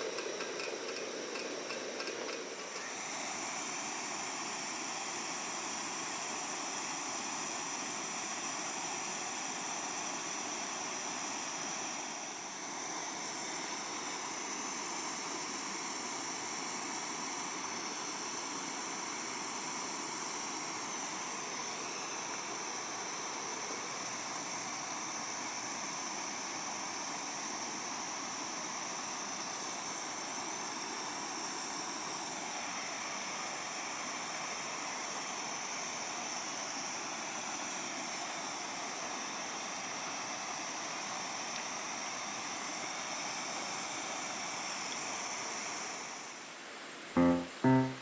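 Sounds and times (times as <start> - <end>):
gas stove burner roaring hiss: 0.0 - 47.4.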